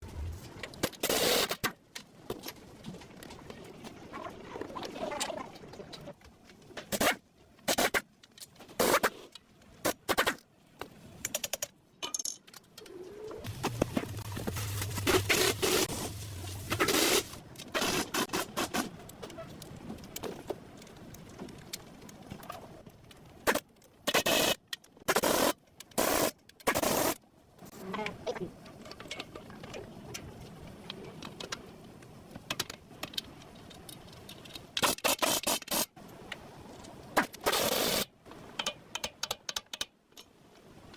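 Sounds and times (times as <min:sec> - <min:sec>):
low hum: 0:00.0 - 0:00.6.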